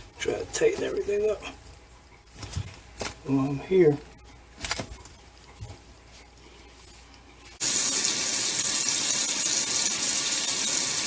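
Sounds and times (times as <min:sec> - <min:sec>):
faucet turned on: 0:07.6 - 0:11.0
water running into sink: 0:07.6 - 0:11.0.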